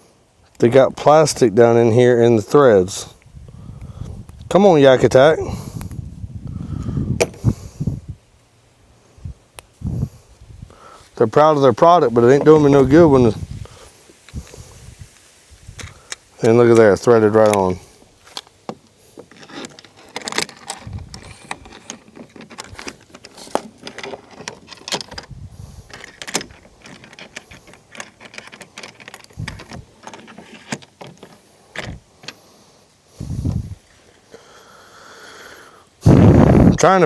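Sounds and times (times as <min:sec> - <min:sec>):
mounting hardware clicking and rattling: 0:15.8 - 0:32.4.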